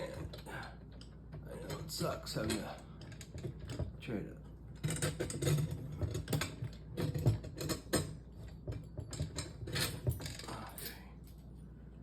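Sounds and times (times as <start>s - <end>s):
metal tools clanking: 0.0s - 11.4s.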